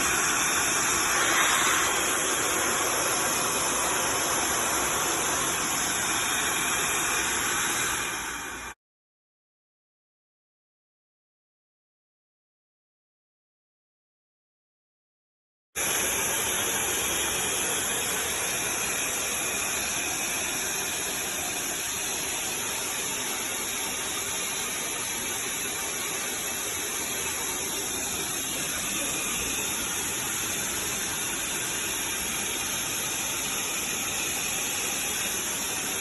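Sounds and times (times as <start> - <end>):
air pump blowing with hiss: 0.0 - 8.8, 15.8 - 36.0.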